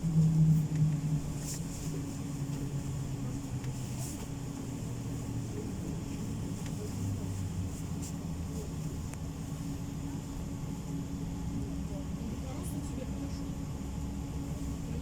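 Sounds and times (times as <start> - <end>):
low motor tone: 0.0 - 1.7
tram humming and rumbling: 0.0 - 15.0.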